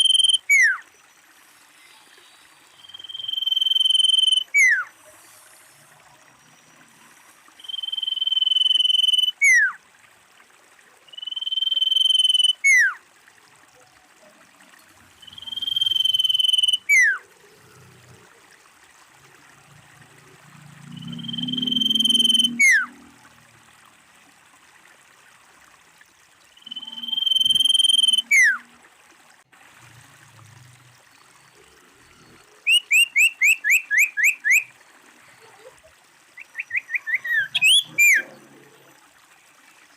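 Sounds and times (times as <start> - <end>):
bird whistling calls: 0.0 - 0.8, 2.8 - 4.9, 7.6 - 9.8, 11.1 - 13.0, 15.2 - 17.2, 21.1 - 22.9, 26.6 - 28.6, 32.6 - 34.7, 36.4 - 38.3.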